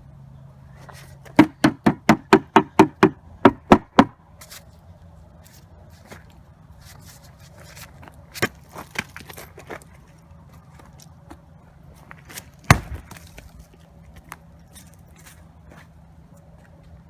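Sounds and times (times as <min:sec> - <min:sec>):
hard knocks on ice: 0:01.3 - 0:04.2, 0:12.6 - 0:13.2.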